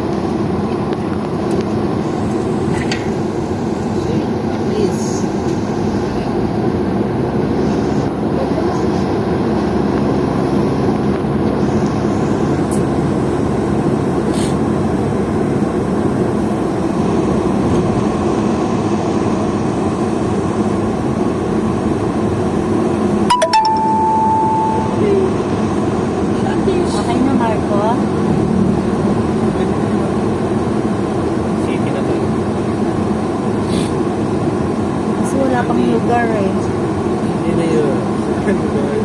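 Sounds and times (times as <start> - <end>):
road noise: 0.0 - 39.0
vehicle engine hum: 0.0 - 39.0
short high beep: 23.3 - 25.4.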